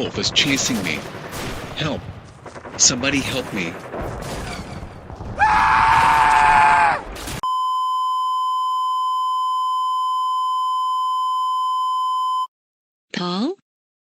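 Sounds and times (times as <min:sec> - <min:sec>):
loud cry: 0:05.4 - 0:07.0.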